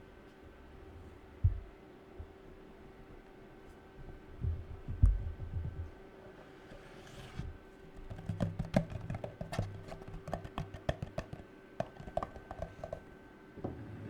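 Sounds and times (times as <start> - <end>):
fingernails tapping hard objects: 8.0 - 13.1.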